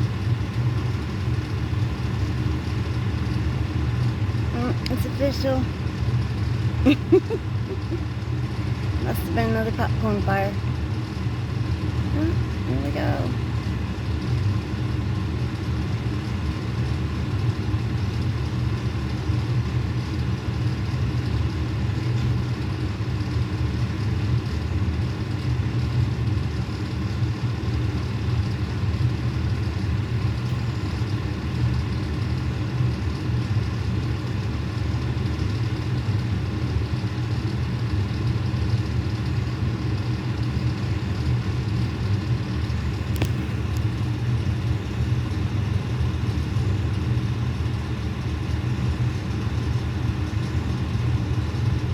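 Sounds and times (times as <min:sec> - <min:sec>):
diesel engine idling: 0:00.0 - 0:13.8.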